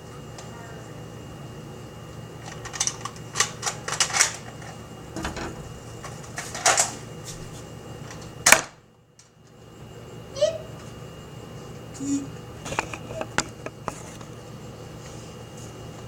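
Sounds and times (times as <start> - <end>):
loud plastic snap: 8.5 - 8.8.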